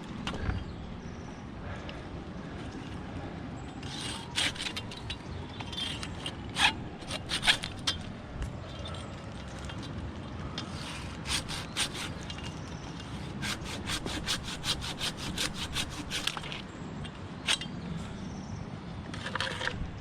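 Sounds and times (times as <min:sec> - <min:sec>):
rasping strokes on dry wood: 0:03.8 - 0:04.9, 0:06.5 - 0:07.8, 0:10.7 - 0:12.3, 0:13.2 - 0:16.6.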